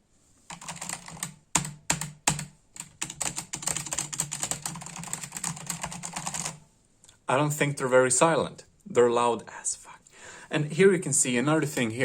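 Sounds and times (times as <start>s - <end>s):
mechanical keyboard typing: 0.5s - 6.6s.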